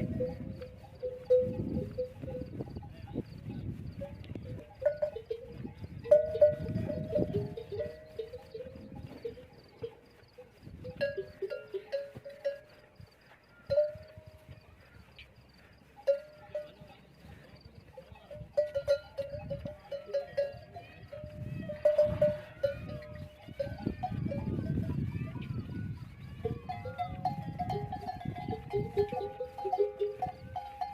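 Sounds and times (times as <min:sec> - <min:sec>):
camel bells clanking: 0:00.0 - 0:30.9.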